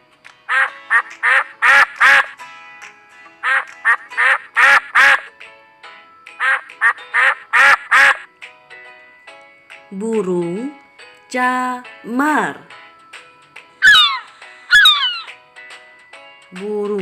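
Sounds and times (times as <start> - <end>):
light background music: 0.0 - 17.0
duck quacking: 0.5 - 2.4, 3.4 - 5.3, 6.4 - 8.2, 13.8 - 15.3.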